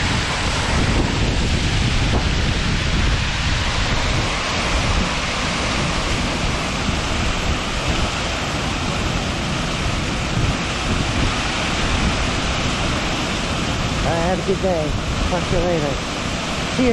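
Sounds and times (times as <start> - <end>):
steady rushing noise: 0.0 - 16.9
wind buffeting microphone: 0.0 - 16.9.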